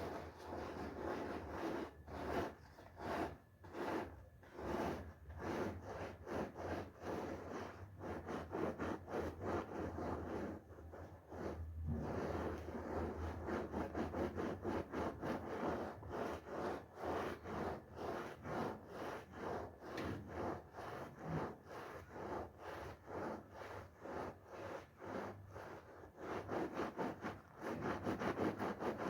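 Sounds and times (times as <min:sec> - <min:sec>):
carpet scrubbing strokes: 0:00.0 - 0:29.0.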